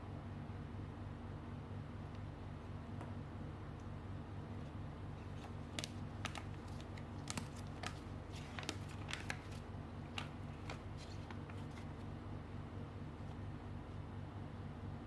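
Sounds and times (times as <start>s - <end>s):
small clicks and crinkles: 5.2s - 12.1s.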